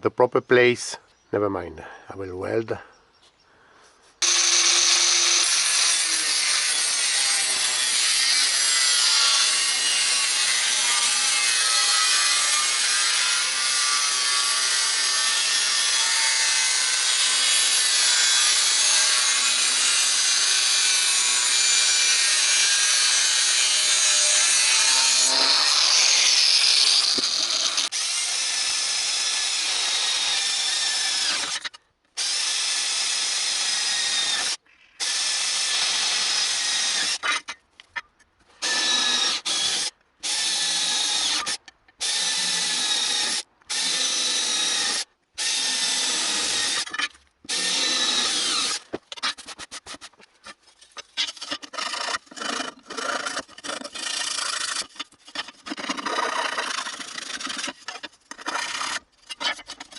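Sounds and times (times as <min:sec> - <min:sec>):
power tool on metal: 0:04.2 - 0:37.4, 0:38.6 - 0:50.0.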